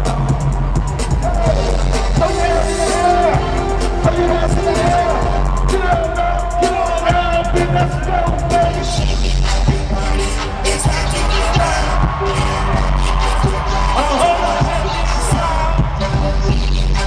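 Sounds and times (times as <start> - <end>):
dance music drum beat: 0.0 - 17.0
sung melody: 1.1 - 17.0.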